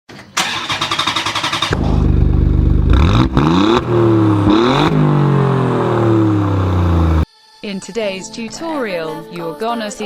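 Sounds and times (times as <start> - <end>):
car starter cranking: 0.4 - 2.1
car engine revving: 0.4 - 7.3.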